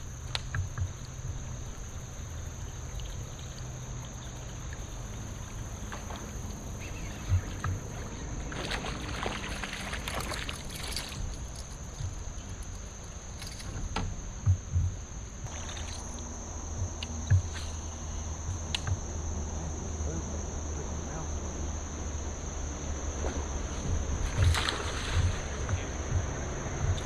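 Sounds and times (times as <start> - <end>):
rustle of water or gear: 0.0 - 14.3, 15.5 - 16.3, 23.2 - 25.9
insects droning: 0.0 - 27.0.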